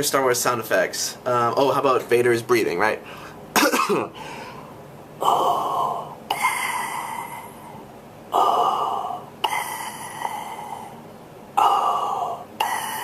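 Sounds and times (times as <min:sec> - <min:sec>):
man imitating respirator breathing: 0:04.1 - 0:13.0.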